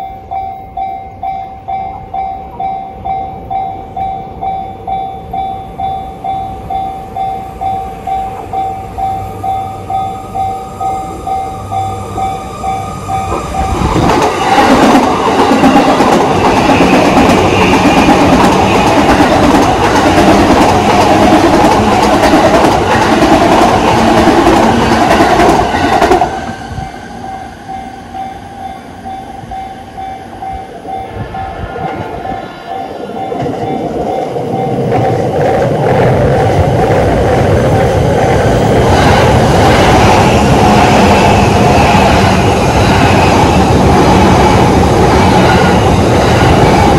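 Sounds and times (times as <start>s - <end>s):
level crossing warning bell: 0.0s - 14.5s, 26.8s - 31.7s, 32.6s - 35.3s
train passing: 0.0s - 46.9s.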